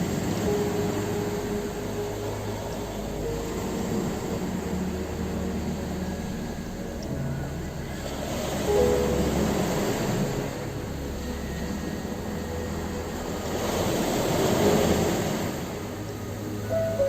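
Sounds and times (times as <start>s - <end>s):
ocean surf washing on shore: 0.0s - 16.8s
soft music of held notes: 0.0s - 17.0s.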